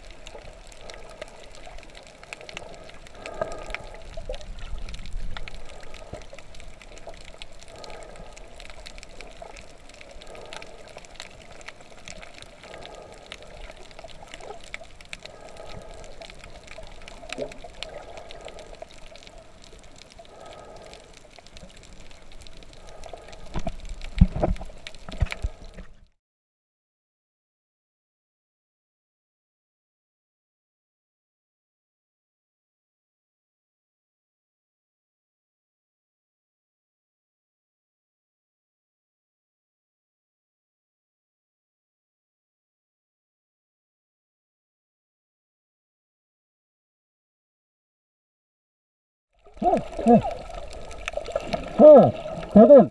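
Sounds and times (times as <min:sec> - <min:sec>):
water sloshing and gurgling: 0:00.0 - 0:26.1, 0:49.4 - 0:52.9.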